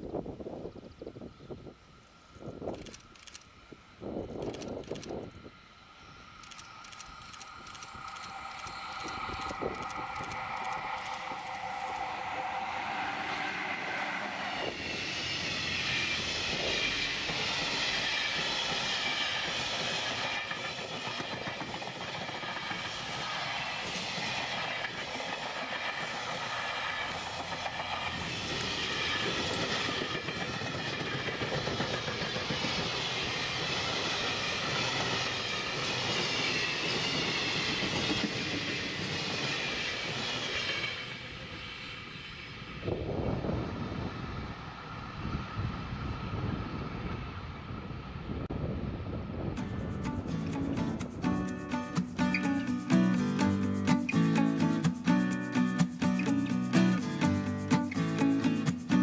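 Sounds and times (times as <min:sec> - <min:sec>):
freight train wheels on rail: 0:00.0 - 0:59.0
wagons clacking over rail joints: 0:18.0 - 0:33.8.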